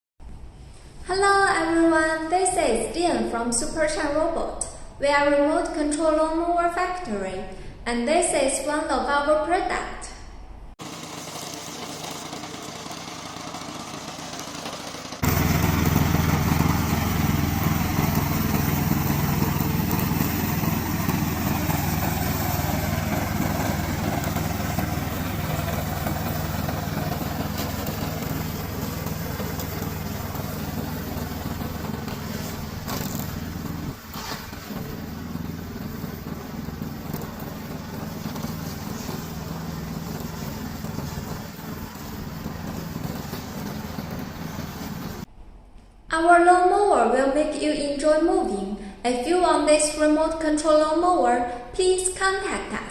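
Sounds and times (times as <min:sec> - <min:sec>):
mower engine droning: 0:10.8 - 0:45.3.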